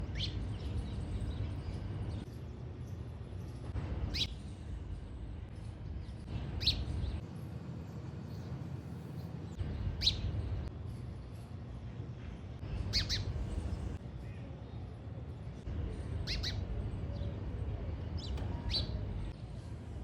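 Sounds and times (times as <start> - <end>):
sparrow chirping: 0.0 - 4.8, 6.0 - 7.2, 9.5 - 10.7, 12.7 - 14.0, 15.7 - 19.3
low background rumble: 0.0 - 20.0.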